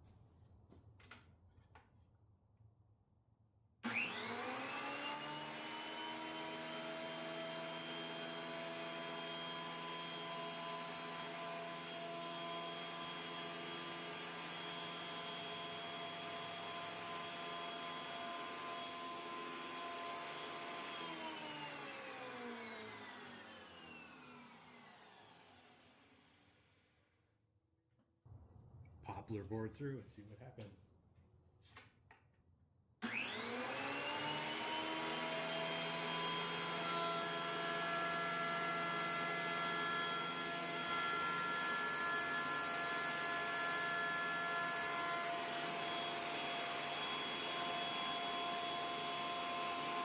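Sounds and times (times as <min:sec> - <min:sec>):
planer motor whining: 0:03.8 - 0:26.2, 0:33.0 - 0:50.0.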